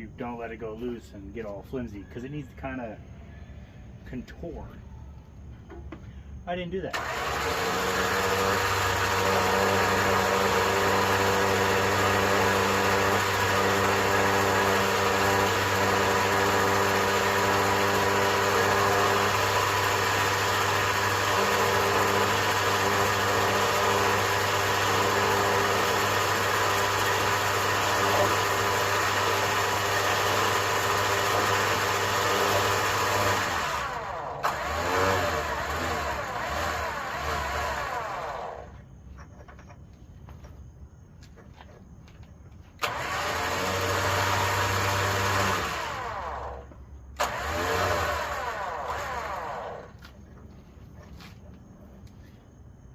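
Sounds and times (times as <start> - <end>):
electric winch running: 6.9 - 38.8, 42.8 - 50.1.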